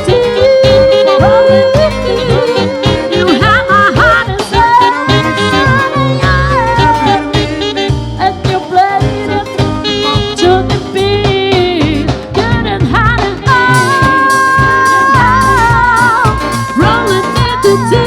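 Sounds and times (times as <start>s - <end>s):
lead singer singing: 0.0s - 18.0s
live band playing: 0.0s - 18.0s.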